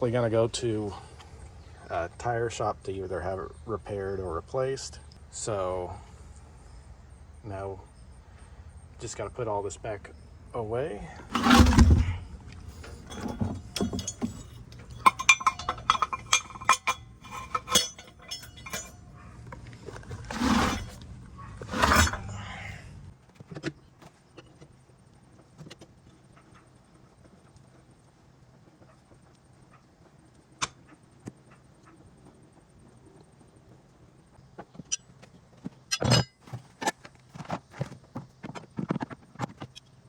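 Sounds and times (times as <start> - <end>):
metal tools clinking and rattling: 11.3 - 22.8, 35.9 - 36.4.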